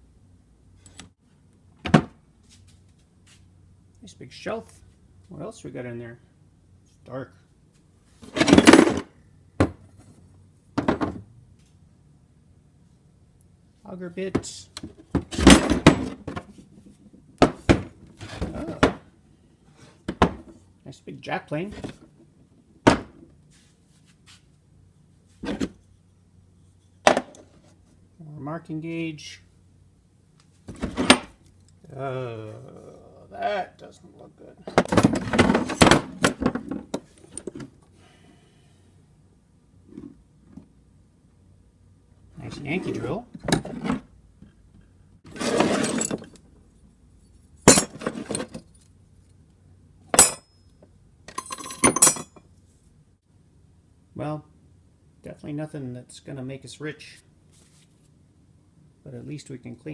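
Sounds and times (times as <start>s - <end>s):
scraping rummage: 45.3s - 46.3s
metal tools clinking and clanking: 45.4s - 46.4s, 47.6s - 48.9s, 50.2s - 50.5s, 51.3s - 52.4s.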